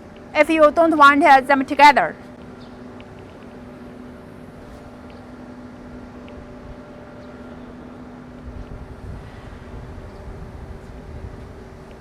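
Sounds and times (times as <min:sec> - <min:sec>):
machinery humming: 0:00.0 - 0:12.0
wind rumble on microphone: 0:08.4 - 0:12.0.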